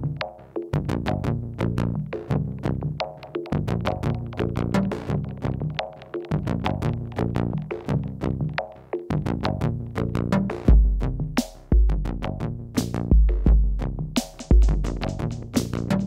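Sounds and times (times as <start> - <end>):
heavy deep bass hit: 10.7 - 12.2.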